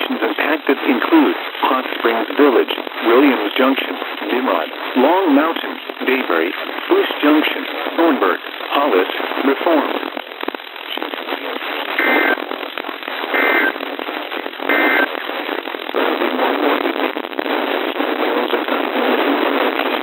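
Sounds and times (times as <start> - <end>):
radio static hiss: 0.0 - 20.0
two-tone data bursts: 12.0 - 12.4, 13.3 - 13.8, 14.6 - 15.2.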